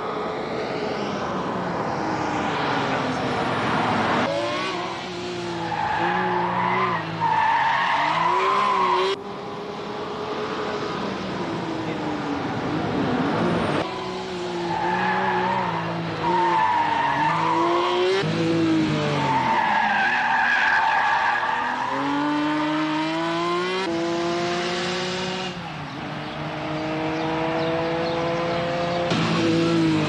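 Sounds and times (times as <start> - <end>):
car engine accelerating hard: 21.5 - 25.6, 26.2 - 30.0.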